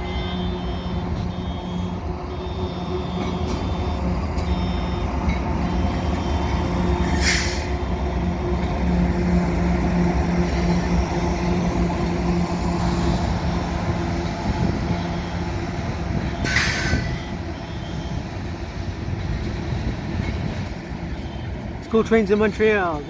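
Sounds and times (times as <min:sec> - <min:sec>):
highway traffic rumble: 0:00.0 - 0:23.0.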